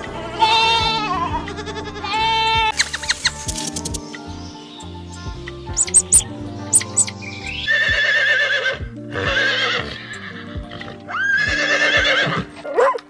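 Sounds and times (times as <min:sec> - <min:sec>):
background music: 0:00.0 - 0:13.0
sharp clicks: 0:02.7 - 0:04.1
horse whinnying: 0:07.7 - 0:13.0.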